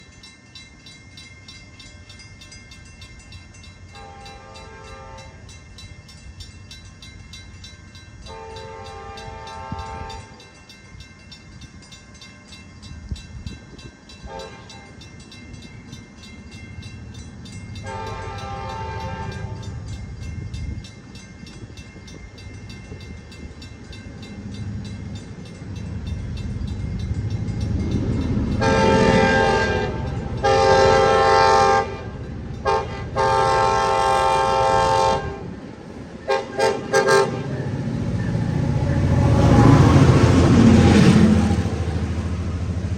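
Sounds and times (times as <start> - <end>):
low rumble of train: 0.0 - 42.9
locomotive air horn: 4.0 - 5.4, 8.3 - 10.3, 14.3 - 14.8, 17.8 - 19.6, 28.6 - 35.6, 36.3 - 37.6.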